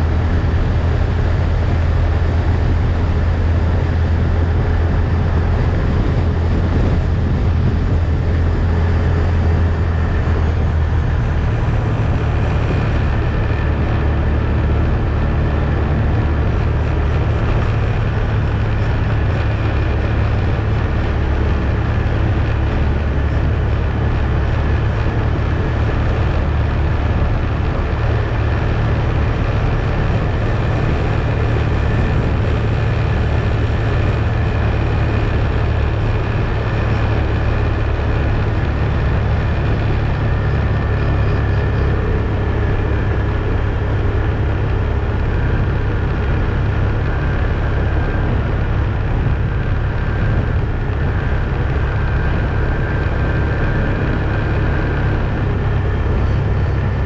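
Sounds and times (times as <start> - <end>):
atv engine running: 0.0 - 57.0.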